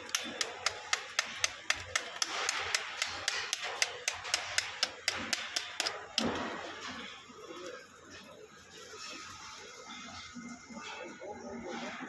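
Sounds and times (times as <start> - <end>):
rapid sharp taps: 0.0 - 6.3.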